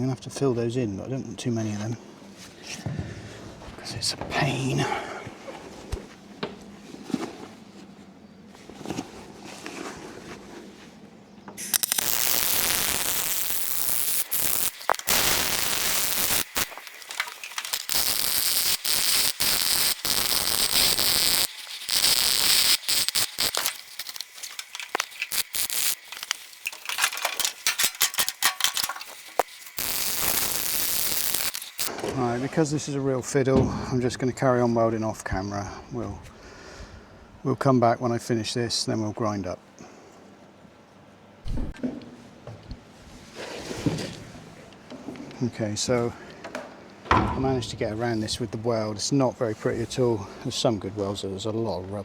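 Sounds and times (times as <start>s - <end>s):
welding arc crackling: 11.6s - 31.9s.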